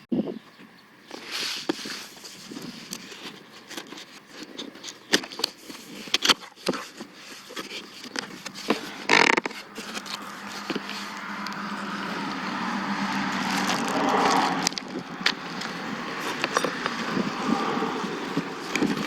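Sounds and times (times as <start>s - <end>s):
packaging scrapes and clicks: 1.1s - 12.4s, 13.0s - 19.0s
packaging rasp: 2.9s - 11.3s.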